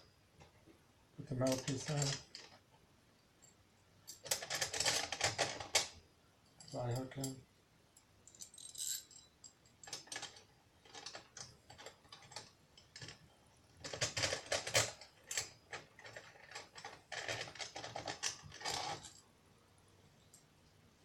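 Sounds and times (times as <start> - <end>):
metal hardware clicking and rattling: 1.4 - 2.6, 8.0 - 13.2.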